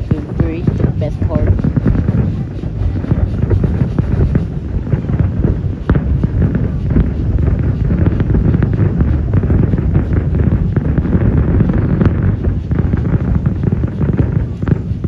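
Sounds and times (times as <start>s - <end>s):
fireworks bursting: 0.0s - 15.0s
low rumble: 0.0s - 15.0s
wind buffeting microphone: 0.0s - 15.0s.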